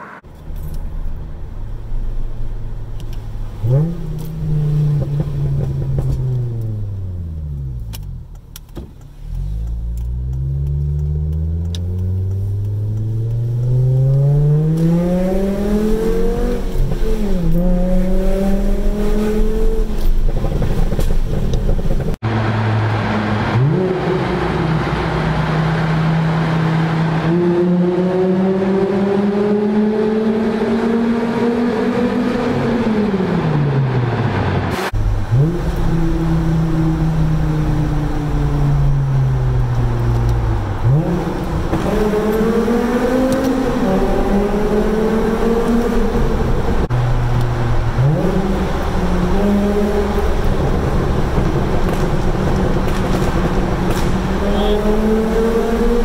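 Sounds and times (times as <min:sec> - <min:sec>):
car engine revving: 0:03.2 - 0:08.6, 0:09.2 - 0:56.0
exhaust crackles and pops: 0:19.8 - 0:23.6, 0:46.7 - 0:55.0.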